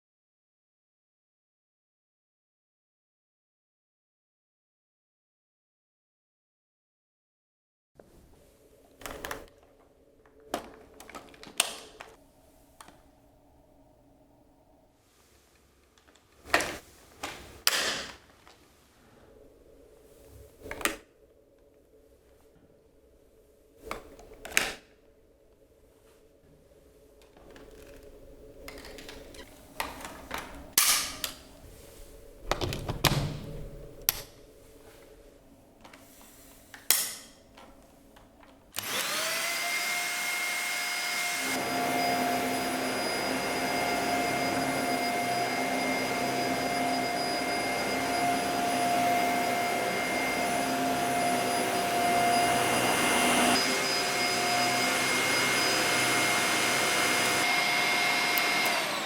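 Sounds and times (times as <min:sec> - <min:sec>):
vacuum cleaner motor whine: 0:38.8 - 0:59.0.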